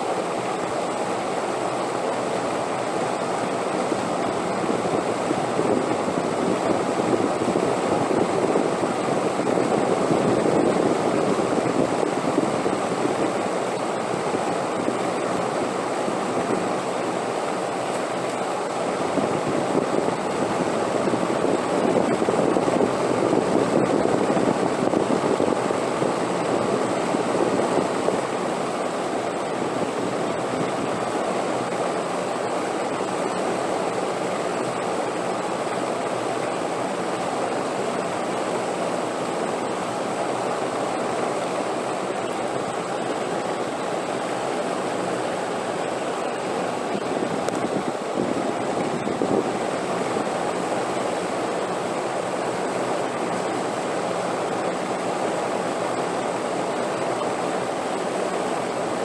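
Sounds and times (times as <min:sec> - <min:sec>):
wind blowing: 0:18.6 - 0:56.8.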